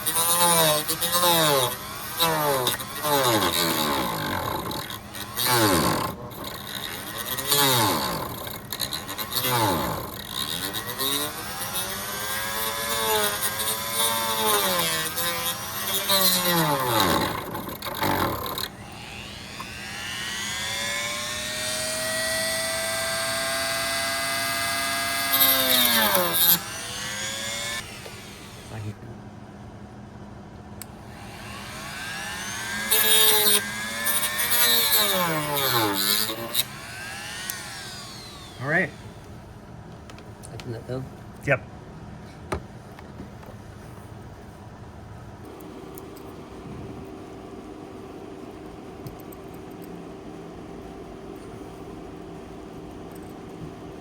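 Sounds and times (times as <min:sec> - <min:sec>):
rotary tool grinding: 0:00.0 - 0:28.7, 0:31.1 - 0:39.4.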